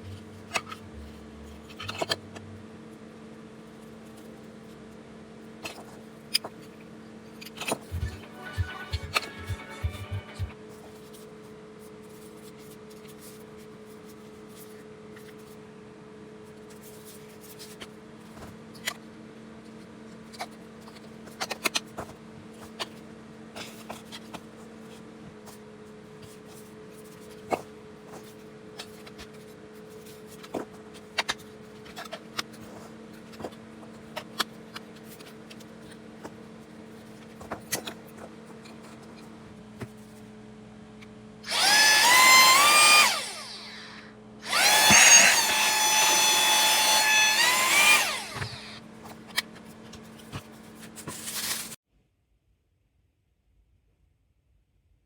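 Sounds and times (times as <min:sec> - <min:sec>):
steady low hum: 0:00.0 - 0:06.3, 0:07.1 - 0:10.6
handheld vacuum cleaner whine: 0:07.9 - 0:10.5, 0:41.4 - 0:48.8.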